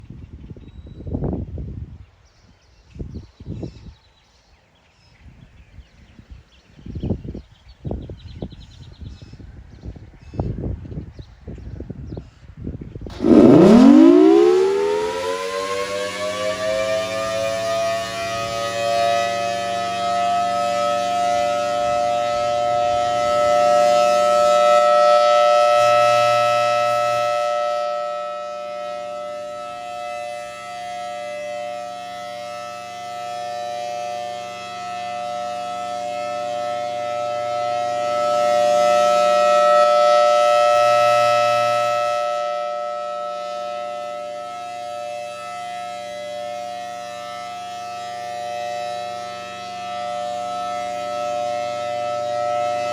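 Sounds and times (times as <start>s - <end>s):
warning siren wailing: 13.1s - 52.9s.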